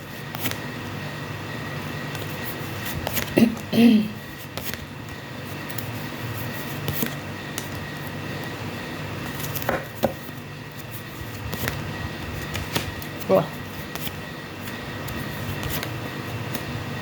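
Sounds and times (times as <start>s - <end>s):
low room hum: 0.0s - 17.0s
cards tapping and rustling: 2.2s - 3.7s, 4.4s - 4.9s, 5.7s - 7.9s, 9.3s - 11.8s, 12.4s - 16.7s.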